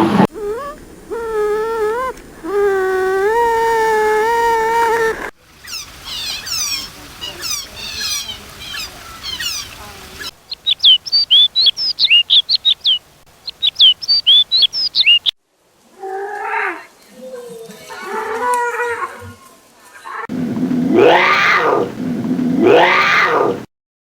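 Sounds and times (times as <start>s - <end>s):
low drawn-out animal calls: 0.0s - 10.4s, 20.0s - 23.7s
songbird chirping: 0.0s - 15.4s.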